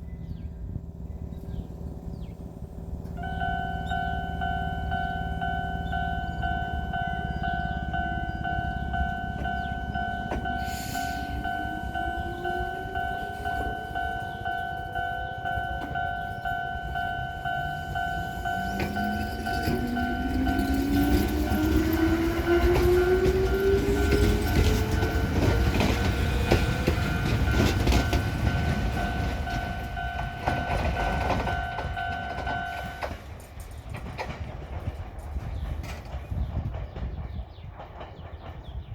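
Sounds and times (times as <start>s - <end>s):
electric train motor whine: 1.3s - 33.2s
level crossing bell clanging: 3.3s - 33.2s.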